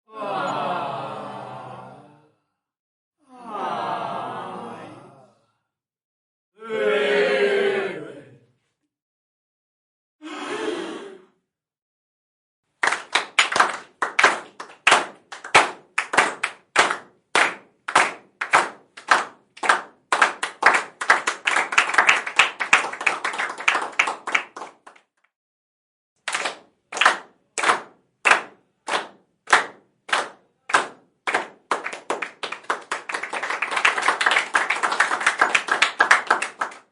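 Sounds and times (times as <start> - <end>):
crowd holding a vowel: 0.1 - 2.2
continuous applause: 12.8 - 25.2, 26.3 - 36.9
crowd clapping in unison: 12.8 - 25.2, 26.2 - 36.9.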